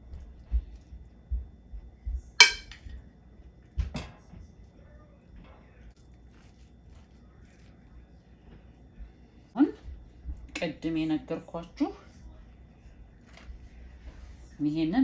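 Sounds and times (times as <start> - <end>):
sharp ringing clink: 2.4 - 2.8
utensil knocking on cookware: 2.4 - 2.9.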